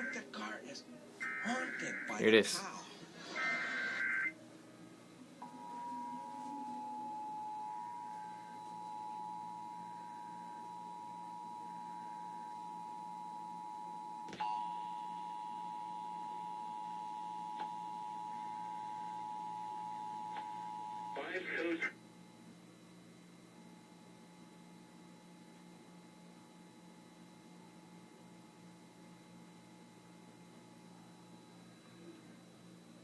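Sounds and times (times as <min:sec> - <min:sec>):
two-tone alarm: 0:01.2 - 0:02.4, 0:03.2 - 0:04.4, 0:05.4 - 0:21.2.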